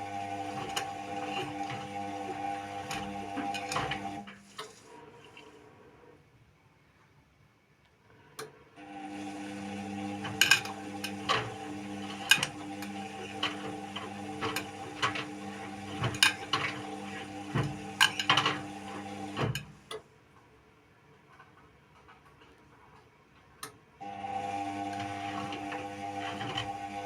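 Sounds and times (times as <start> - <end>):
washing machine motor humming: 0.0 - 5.4, 8.8 - 19.9, 24.0 - 27.0.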